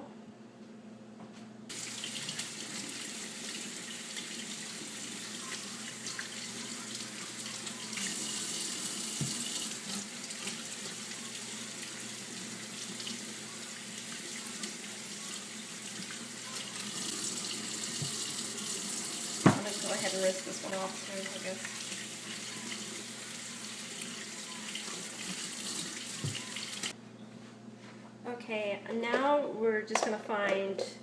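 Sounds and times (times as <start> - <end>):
tap water running over beets: 1.7 - 26.9.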